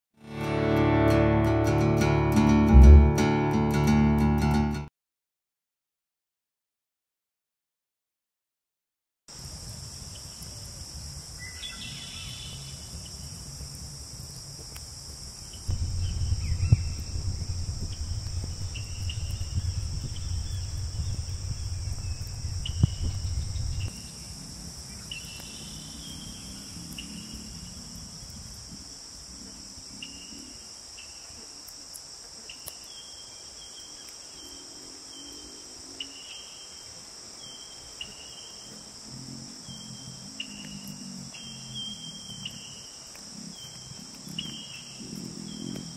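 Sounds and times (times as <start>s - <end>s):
low rumble: 2.7s - 3.2s, 15.7s - 24.0s
insect chorus with chirps: 9.3s - 45.9s.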